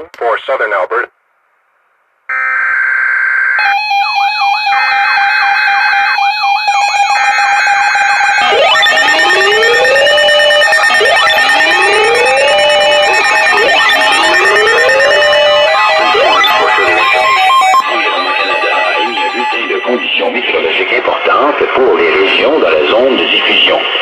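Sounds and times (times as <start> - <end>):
rising siren sweeps: 3.6 - 21.0
steady high alert tone: 6.4 - 21.0
wavering warble tones: 8.4 - 21.0.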